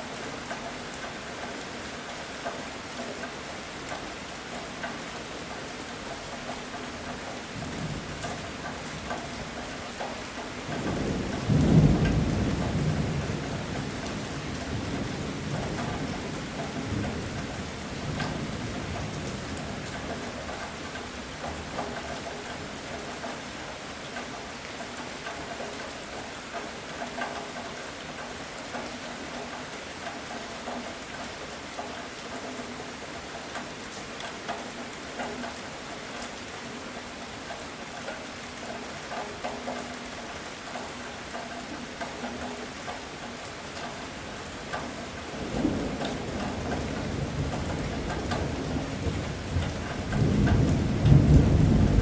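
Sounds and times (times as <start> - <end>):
heavy rain pattering: 0.0 - 52.0
thunder rumble: 45.4 - 52.0.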